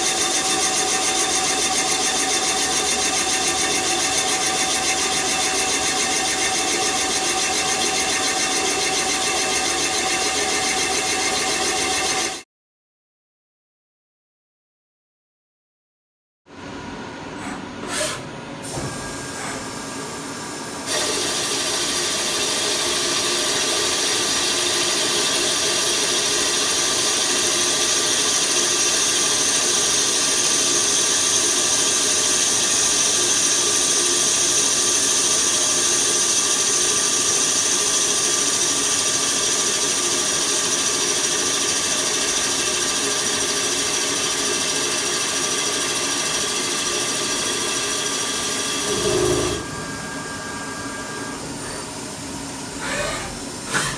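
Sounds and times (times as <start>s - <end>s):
machine tool cutting cast iron: 42.2s - 49.7s.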